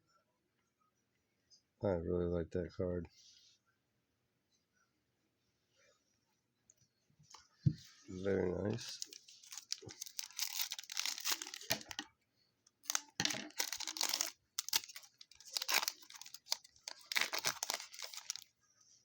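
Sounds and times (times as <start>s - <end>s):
foil wrapper tearing and crinkling: 8.8s - 12.0s, 12.8s - 18.5s.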